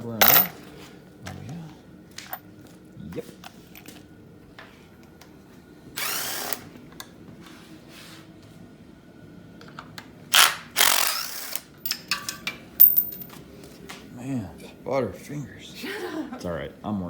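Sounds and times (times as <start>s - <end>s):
impact gun spinning bolts: 0.2s - 0.5s.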